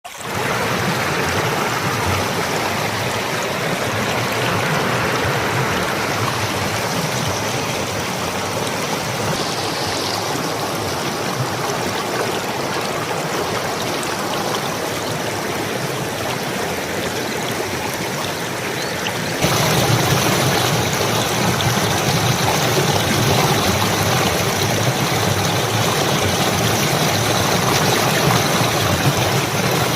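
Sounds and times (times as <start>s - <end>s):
stream babbling over stones: 0.1s - 29.9s.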